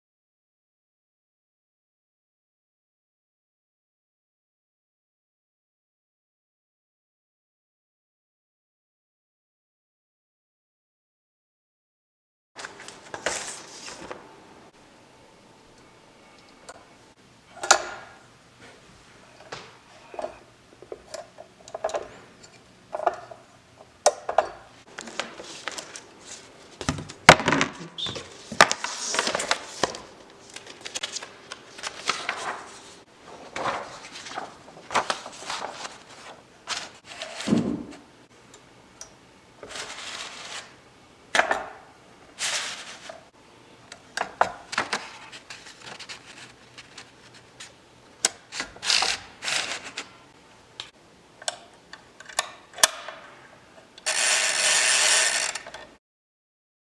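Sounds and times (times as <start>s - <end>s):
falling sliding sound: 54.1s - 55.6s.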